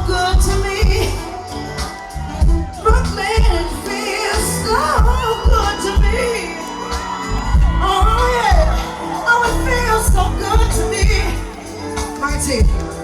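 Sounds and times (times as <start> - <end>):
heavy bass beat: 0.0 - 13.0
person singing: 0.0 - 13.0.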